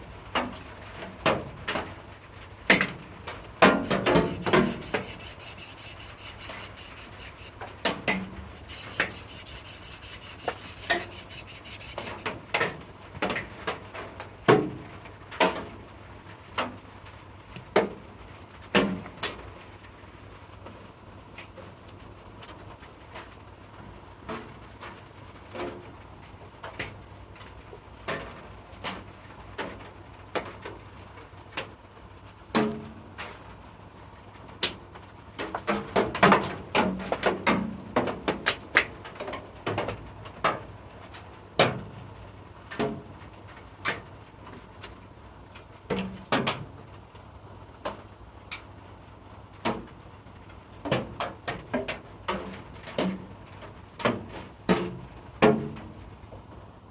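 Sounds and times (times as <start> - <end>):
tools clicking on workbench: 3.4 - 8.0, 8.6 - 12.3.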